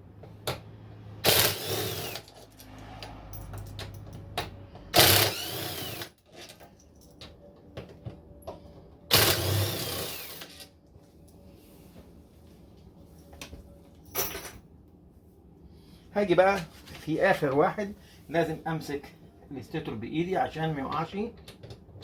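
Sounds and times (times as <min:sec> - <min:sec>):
power drill whining: 0:01.2 - 0:02.3, 0:05.0 - 0:06.1, 0:09.1 - 0:10.7.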